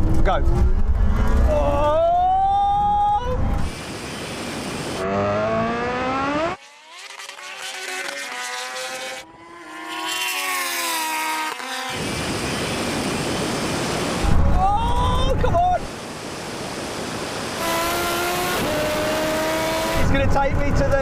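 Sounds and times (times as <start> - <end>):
racing motorcycle engines accelerating: 4.5 - 14.4, 17.0 - 21.0
wind rush: 12.0 - 20.2.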